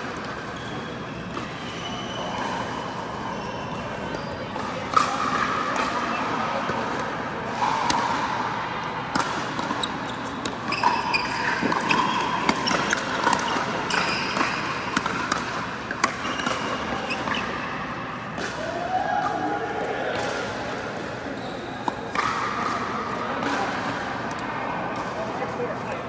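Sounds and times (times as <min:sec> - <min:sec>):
ball bouncing on court floor: 0:09.0 - 0:17.5.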